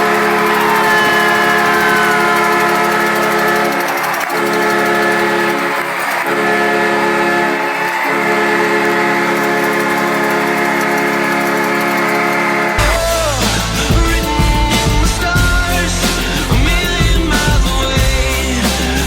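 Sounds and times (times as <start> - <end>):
goal horn blasts: 0.0 - 13.6.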